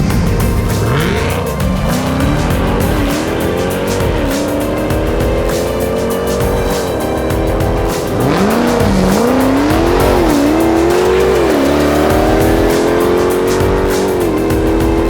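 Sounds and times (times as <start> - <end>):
background music with steady beat: 0.0 - 15.0
car engine accelerating hard: 0.0 - 15.0.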